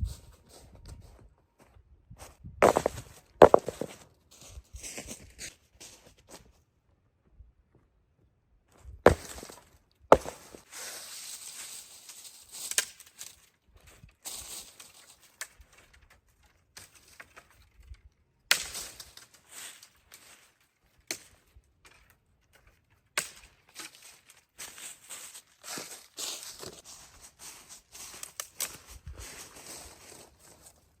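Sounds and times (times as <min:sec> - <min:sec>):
sharp knocks of wood: 0:02.6 - 0:03.9, 0:09.1 - 0:10.6
rustling and crunching debris: 0:02.6 - 0:06.5, 0:09.0 - 0:31.0.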